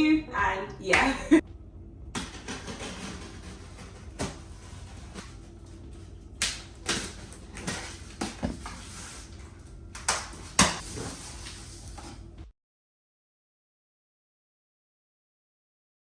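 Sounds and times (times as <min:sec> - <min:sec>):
steady low hum: 0:00.0 - 0:12.5
objects knocking and bumping: 0:02.1 - 0:05.4.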